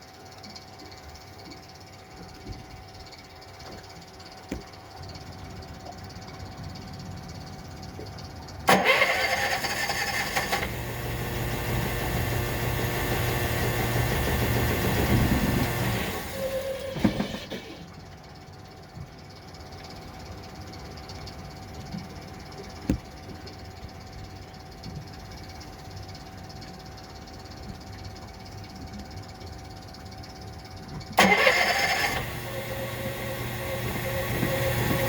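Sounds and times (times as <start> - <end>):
engine starter cranking: 8.7 - 17.9, 31.2 - 35.0
generator engine running: 8.7 - 18.0, 31.2 - 35.0.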